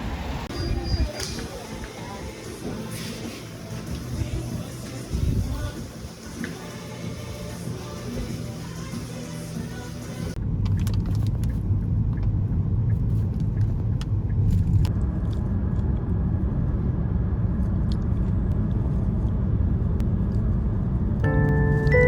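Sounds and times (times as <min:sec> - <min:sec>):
music: 0:01.4 - 0:10.4, 0:21.3 - 0:22.0
low steady rumble: 0:01.6 - 0:22.0
faint high tone: 0:21.3 - 0:22.0.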